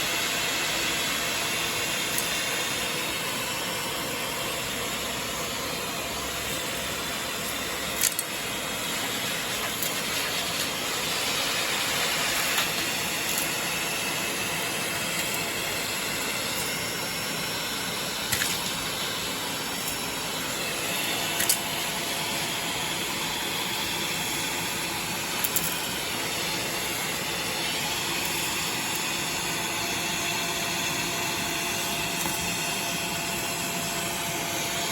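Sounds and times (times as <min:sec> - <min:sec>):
vacuum cleaner running: 0:00.0 - 0:34.9.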